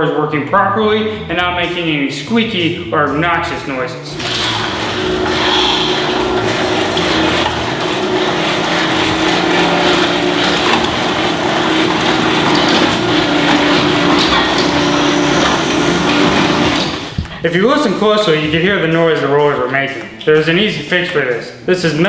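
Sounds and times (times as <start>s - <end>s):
garage door rollers running: 4.1s - 17.8s
steady hum: 4.1s - 18.0s.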